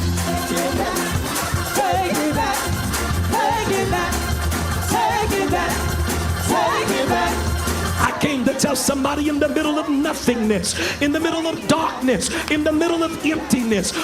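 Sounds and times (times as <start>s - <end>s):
gospel band music: 0.0s - 14.0s
person singing wordless runs: 6.5s - 14.0s.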